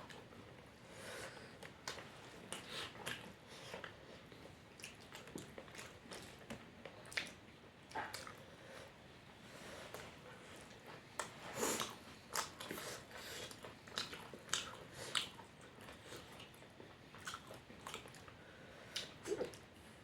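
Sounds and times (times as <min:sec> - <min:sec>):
person chewing food: 0:09.9 - 0:19.6.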